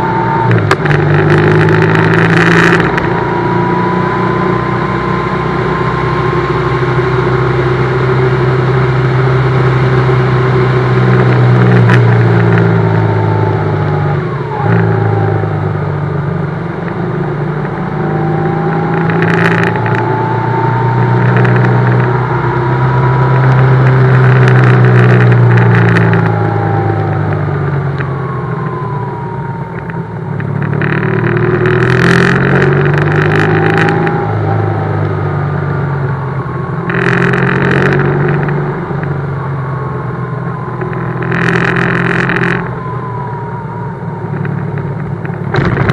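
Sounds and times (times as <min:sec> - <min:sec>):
motorcycle engine running: 0:00.0 - 0:45.9
thin gliding whine: 0:00.0 - 0:45.9.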